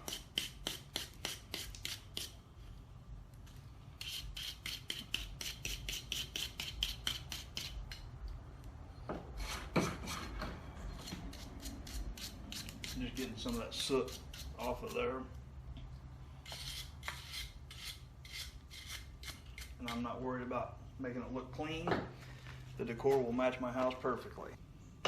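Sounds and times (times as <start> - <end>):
brush scraping steel: 3.9 - 8.0, 9.4 - 15.3, 16.4 - 20.2.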